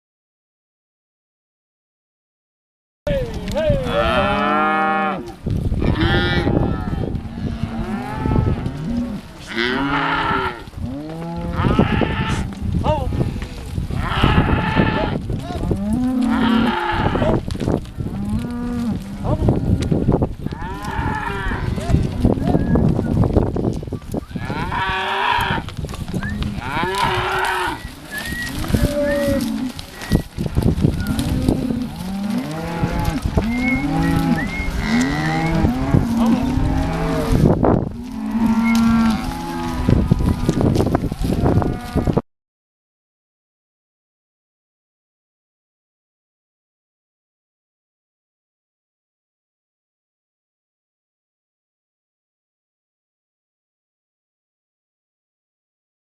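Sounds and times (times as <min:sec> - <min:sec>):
cows mooing: 0:03.8 - 0:12.8, 0:13.9 - 0:17.4, 0:18.0 - 0:22.9, 0:24.3 - 0:42.2.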